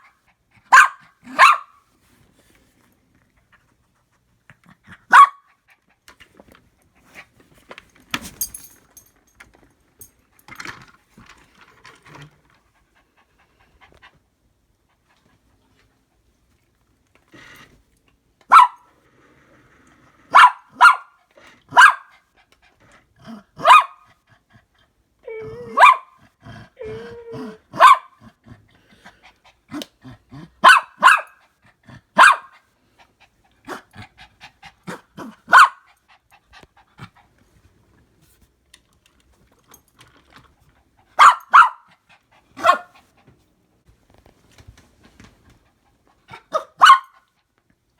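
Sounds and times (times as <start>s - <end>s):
dog barking: 0.7s - 1.8s, 5.1s - 5.5s, 18.5s - 18.8s, 20.3s - 22.1s, 23.6s - 24.0s, 25.7s - 26.2s, 27.7s - 28.2s, 30.6s - 31.4s, 32.2s - 32.5s, 34.9s - 35.9s, 41.2s - 41.9s, 42.6s - 42.9s, 46.5s - 47.2s.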